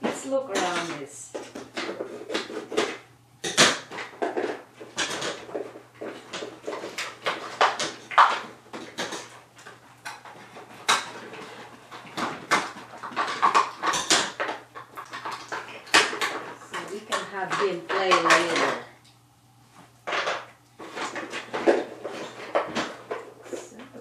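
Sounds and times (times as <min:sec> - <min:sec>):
toy blocks clicking and knocking: 0:00.0 - 0:18.9.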